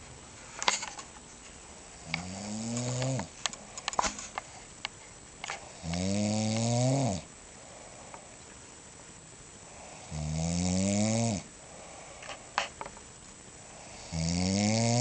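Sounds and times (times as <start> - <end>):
person snoring: 2.1 - 3.3, 5.7 - 8.0, 9.8 - 12.2, 13.8 - 15.0.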